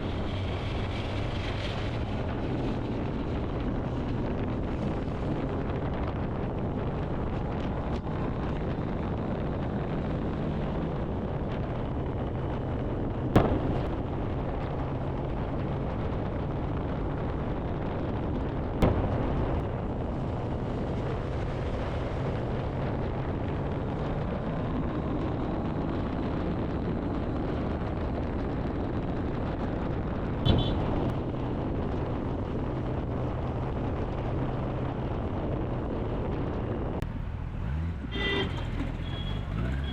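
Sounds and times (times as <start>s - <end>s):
wind rushing over microphone: 0.0s - 39.9s
motorcycle engine droning: 35.7s - 39.9s.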